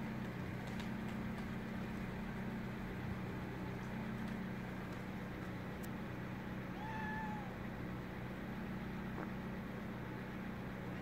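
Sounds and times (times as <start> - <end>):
low background hum: 0.0 - 11.0
cat meowing: 6.7 - 7.6.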